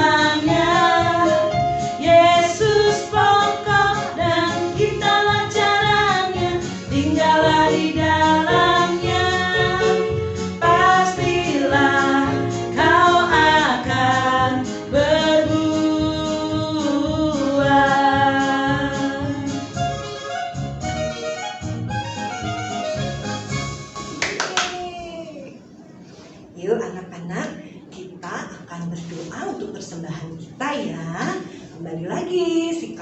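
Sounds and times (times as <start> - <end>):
woman singing: 0.0 - 19.6
instrumental accompaniment: 0.0 - 24.4.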